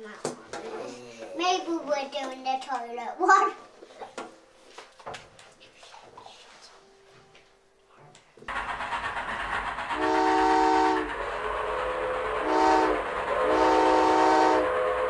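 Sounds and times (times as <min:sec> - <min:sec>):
horn blasts: 0:10.0 - 0:11.2, 0:12.2 - 0:15.0.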